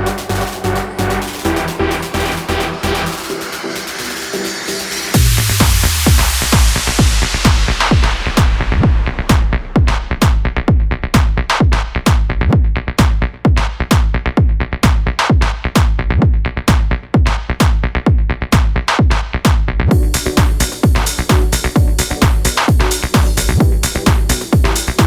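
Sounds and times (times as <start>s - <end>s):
hissing synth layer: 0.0s - 10.6s, 19.9s - 25.0s
electronic dance music: 0.0s - 16.0s, 18.5s - 25.0s.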